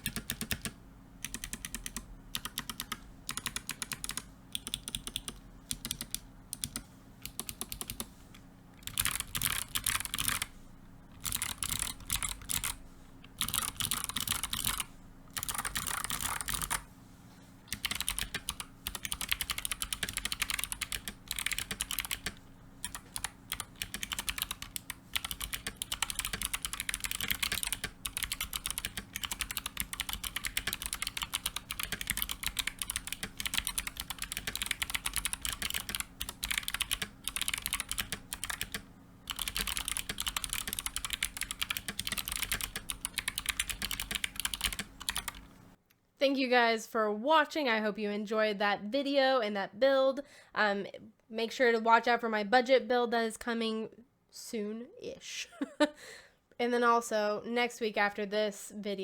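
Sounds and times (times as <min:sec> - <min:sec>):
mechanical keyboard typing clicks: 0:00.0 - 0:08.1, 0:08.8 - 0:10.5, 0:11.1 - 0:16.8, 0:17.7 - 0:45.5.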